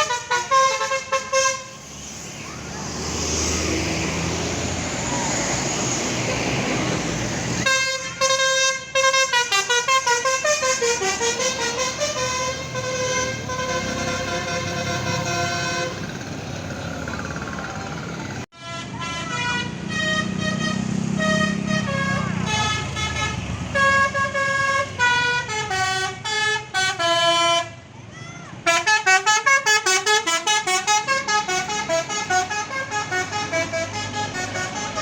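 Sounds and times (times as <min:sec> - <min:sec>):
bus multi-tone horn melody: 0:00.0 - 0:01.9, 0:07.6 - 0:16.4, 0:18.5 - 0:27.9, 0:28.6 - 0:35.0
road traffic noise: 0:00.0 - 0:35.0.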